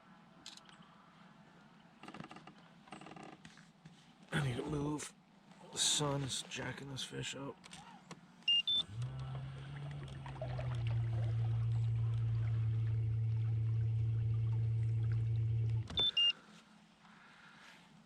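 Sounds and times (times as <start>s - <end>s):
electric motor humming: 8.8s - 16.2s.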